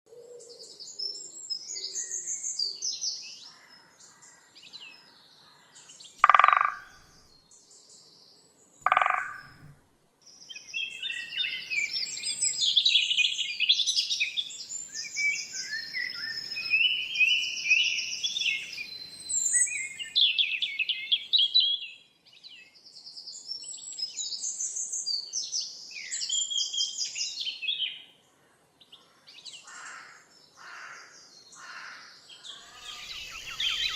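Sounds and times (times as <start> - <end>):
songbirds chirping and singing: 0.1 - 28.2, 28.9 - 33.9
loud low bird call: 6.2 - 7.2, 8.9 - 9.7, 29.6 - 33.9.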